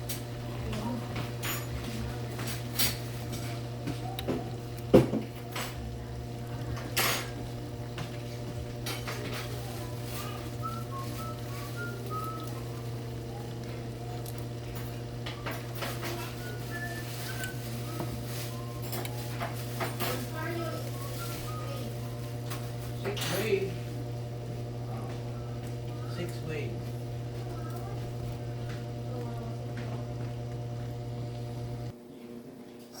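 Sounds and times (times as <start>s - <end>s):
steady low hum: 0.0s - 33.0s
metal utensils clinking on pots: 6.8s - 7.4s, 8.8s - 12.6s, 14.6s - 24.0s.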